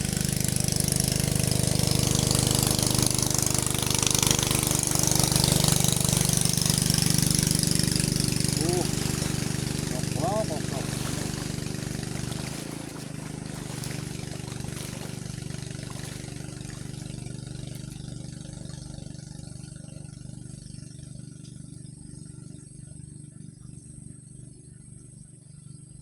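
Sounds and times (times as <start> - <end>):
engine humming: 0.0 - 22.5.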